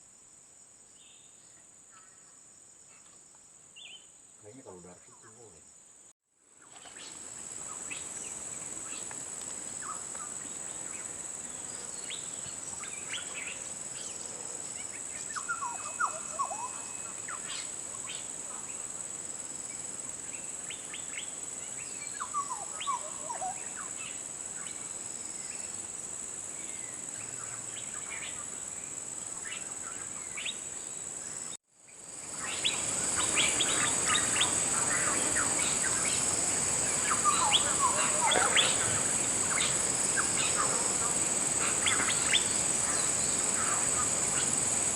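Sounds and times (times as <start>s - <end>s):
high-pitched insect drone: 32.0s - 44.9s
wild bird calls: 32.3s - 44.8s.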